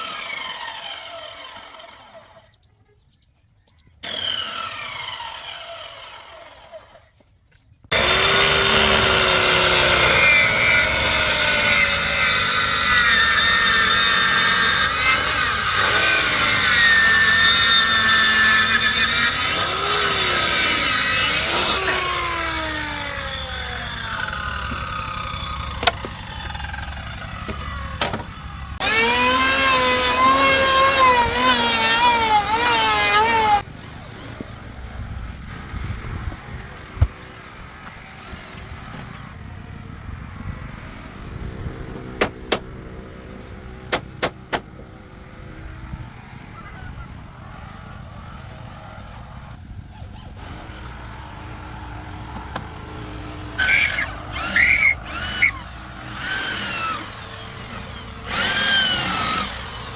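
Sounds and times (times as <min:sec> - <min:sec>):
power saw cutting hardwood: 0:00.0 - 0:02.5, 0:04.0 - 0:07.1, 0:07.9 - 0:34.8, 0:49.9 - 0:59.9.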